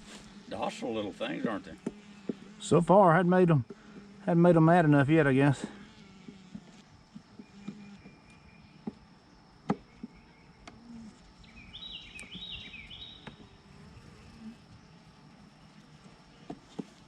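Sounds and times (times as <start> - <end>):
honeybees buzzing: 0.0 - 17.0
knocks of hive frames: 0.6 - 8.2
bird singing: 7.2 - 16.6.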